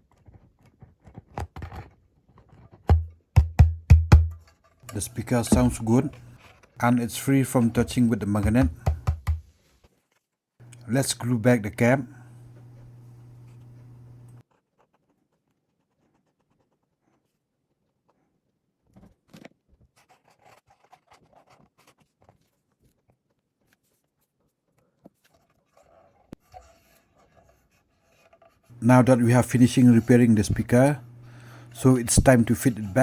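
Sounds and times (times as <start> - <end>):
faint clicks taps and scrapes: 4.8 - 9.4, 12.4 - 17.4, 18.9 - 33.0
steady low hum: 4.9 - 9.3, 10.6 - 14.4, 28.7 - 33.0.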